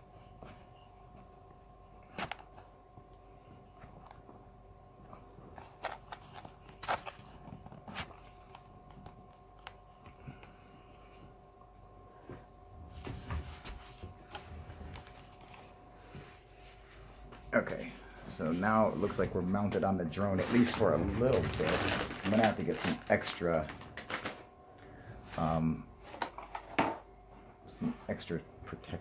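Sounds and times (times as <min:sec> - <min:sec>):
faint steady hum: 0:00.0 - 0:29.0
rubbing and rustling: 0:18.3 - 0:24.5.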